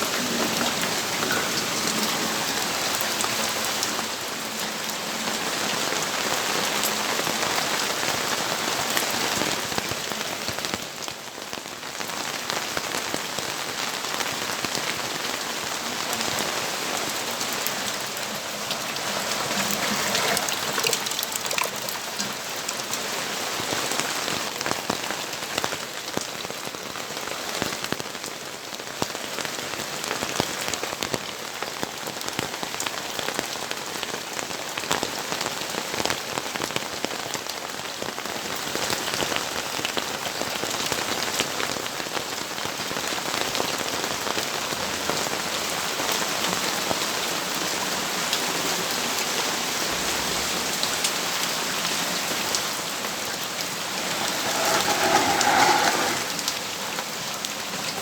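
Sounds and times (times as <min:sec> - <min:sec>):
raindrops pattering on hard surfaces: 0:00.0 - 0:58.0
steady rain falling: 0:00.0 - 0:58.0.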